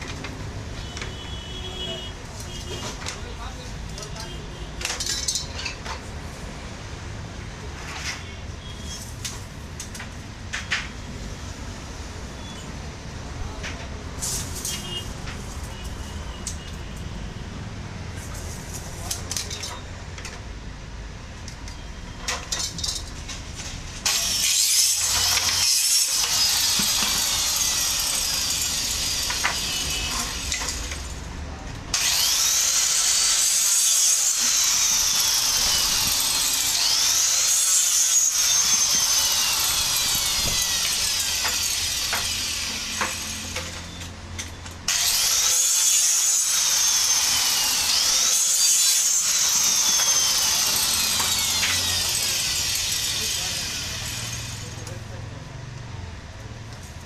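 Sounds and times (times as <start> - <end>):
electric power saw cutting board: 24.0 - 31.1, 31.9 - 44.0, 44.9 - 54.8.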